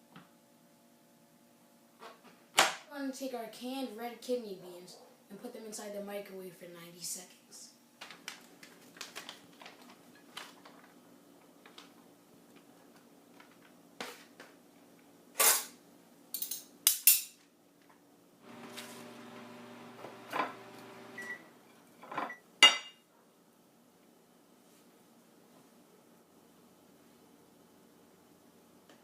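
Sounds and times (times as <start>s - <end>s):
microwave oven humming: 18.4s - 21.7s
microwave short beep: 21.1s - 21.5s
dish and microwave clatter: 22.0s - 22.9s.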